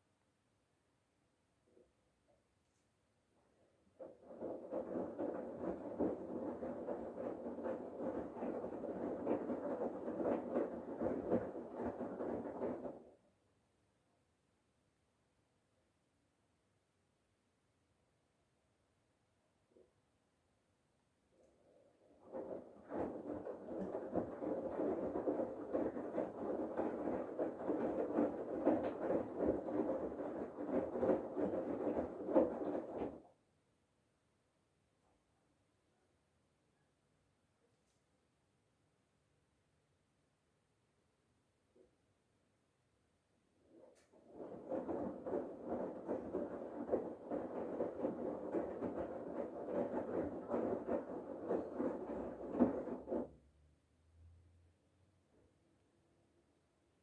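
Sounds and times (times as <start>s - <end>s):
washing machine drum tumbling laundry: 4.0s - 13.1s, 22.1s - 33.3s, 44.2s - 53.4s.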